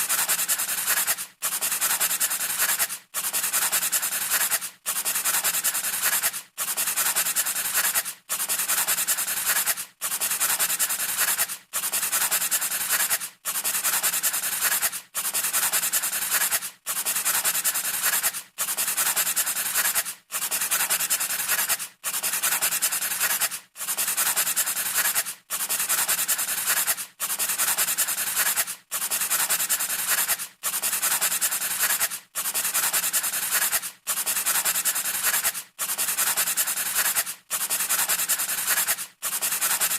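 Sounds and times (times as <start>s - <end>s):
scratchy rubbing strokes: 0.0s - 39.9s.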